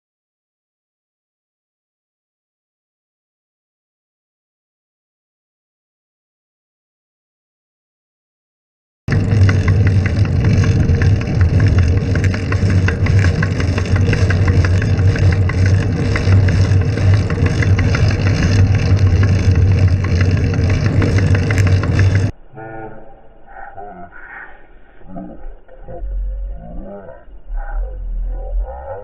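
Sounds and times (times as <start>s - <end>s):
traffic road noise: 9.1s - 22.3s.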